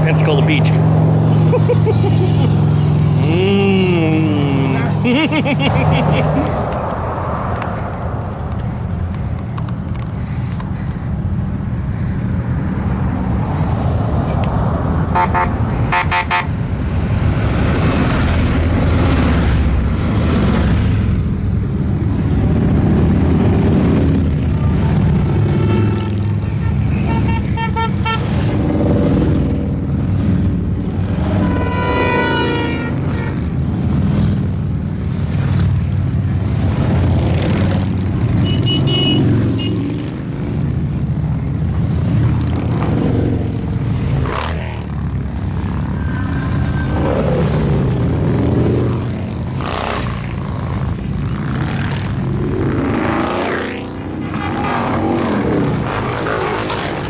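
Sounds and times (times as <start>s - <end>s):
motorcycles rumbling past: 0.0s - 9.1s, 28.2s - 57.0s
motorcycle horns tooting: 15.1s - 16.6s, 25.1s - 28.4s, 31.2s - 33.5s, 38.4s - 40.0s.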